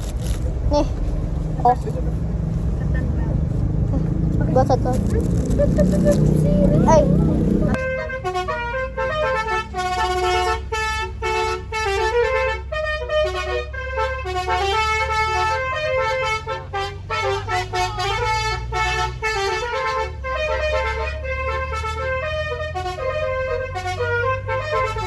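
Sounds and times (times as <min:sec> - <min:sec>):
engine humming low: 0:00.0 - 0:25.0
musical bus horn playing a tune: 0:05.7 - 0:25.0.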